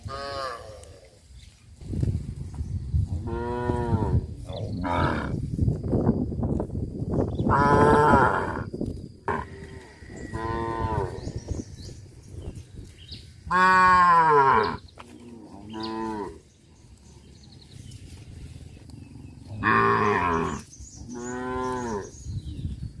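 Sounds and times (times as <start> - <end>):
cows mooing: 3.2 - 5.4, 7.5 - 8.7, 9.3 - 11.3, 13.5 - 16.4, 19.2 - 22.2.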